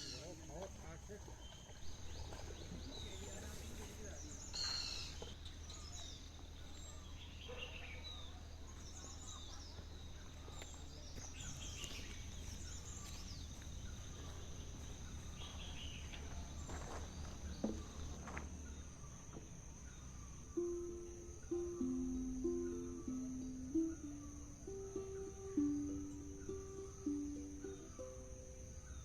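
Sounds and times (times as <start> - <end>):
bird chirps: 0.0 - 29.0.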